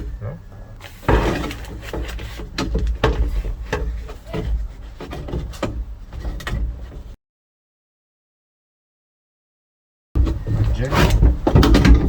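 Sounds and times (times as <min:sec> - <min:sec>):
rough handling rumble: 0:00.0 - 0:07.2, 0:10.2 - 0:12.0.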